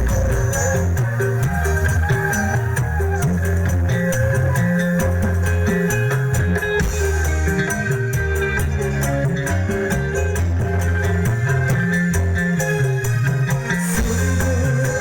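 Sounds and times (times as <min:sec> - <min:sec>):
live band music: 0:00.0 - 0:15.0.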